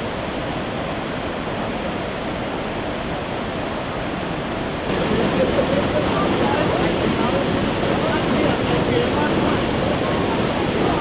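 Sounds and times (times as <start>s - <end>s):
waterfall rushing: 4.9s - 11.0s.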